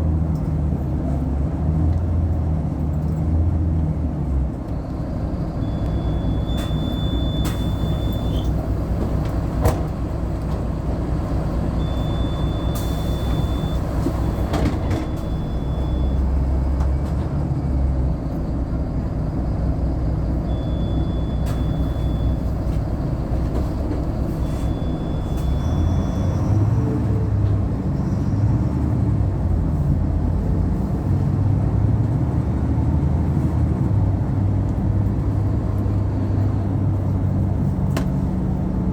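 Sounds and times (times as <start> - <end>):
bus engine rumble: 0.0 - 38.9
bus body knocks and rattles: 6.6 - 10.9, 14.0 - 15.4, 37.6 - 38.9.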